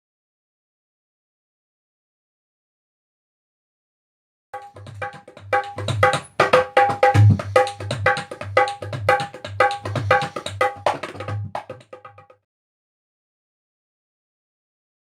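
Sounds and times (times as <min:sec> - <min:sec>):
low booming drum beats: 0:04.6 - 0:11.7.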